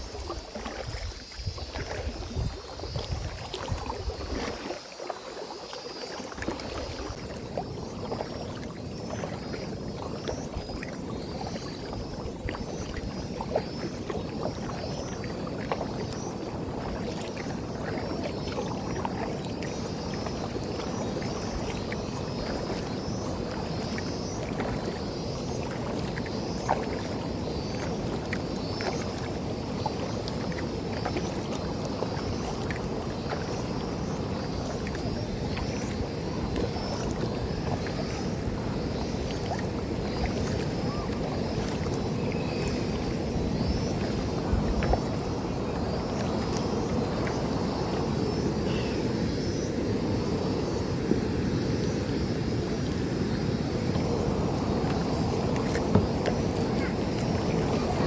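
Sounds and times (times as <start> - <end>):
river water rushing: 27.8 - 58.0.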